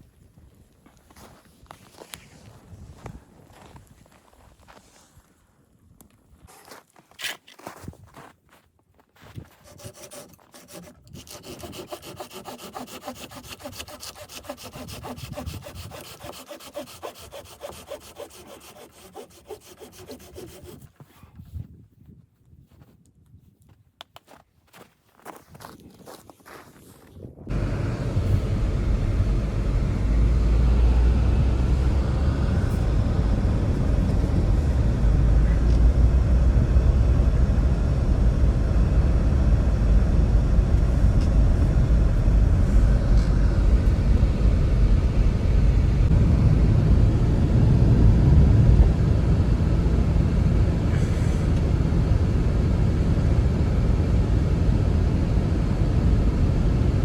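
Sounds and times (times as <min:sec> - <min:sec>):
loud steady low rumble: 0:27.5 - 0:57.0.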